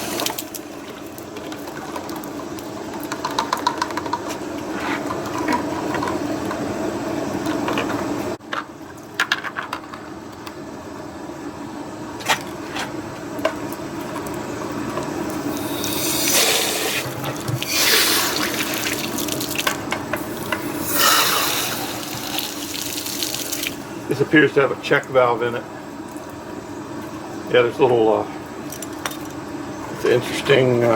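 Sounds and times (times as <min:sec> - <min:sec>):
tap water splashing: 0:17.2 - 0:23.8.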